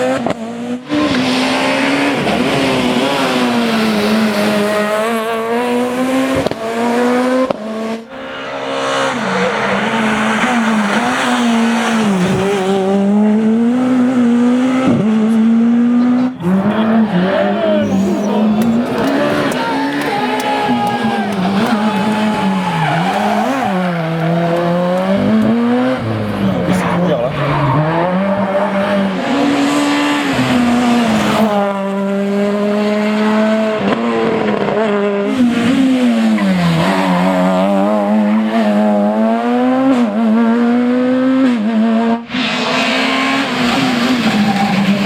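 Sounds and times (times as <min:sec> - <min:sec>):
rally car engines revving: 0:00.0 - 0:45.0.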